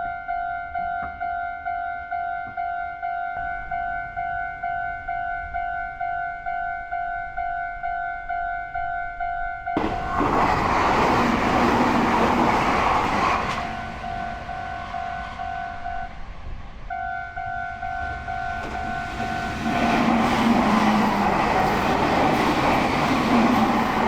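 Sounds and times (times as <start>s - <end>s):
train wheels on rails: 9.8s - 24.0s.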